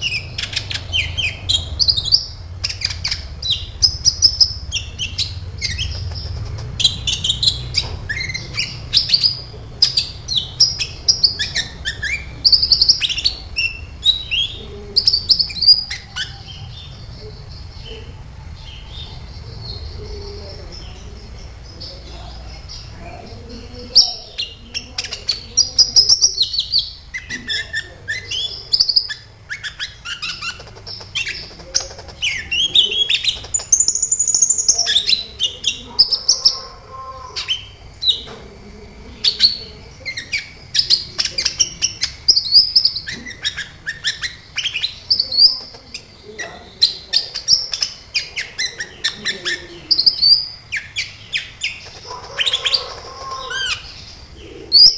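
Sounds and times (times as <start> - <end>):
bird chirping song: 0.0 - 54.9.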